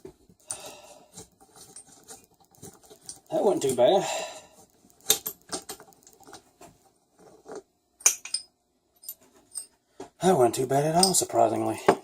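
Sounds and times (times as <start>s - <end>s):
metal tools clinking: 8.0s - 9.8s, 11.0s - 11.4s.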